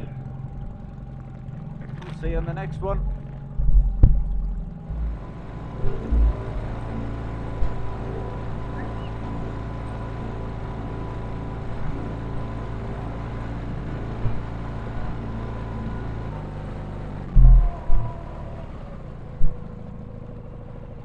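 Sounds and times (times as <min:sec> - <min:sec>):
outboard motor running: 0:00.0 - 0:21.0
loud heavy thumps: 0:02.1 - 0:05.3, 0:17.3 - 0:18.1.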